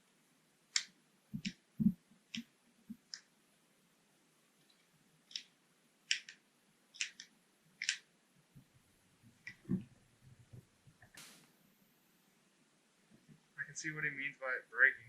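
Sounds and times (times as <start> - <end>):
wooden clicks and taps: 0.7 - 3.3, 7.0 - 8.1.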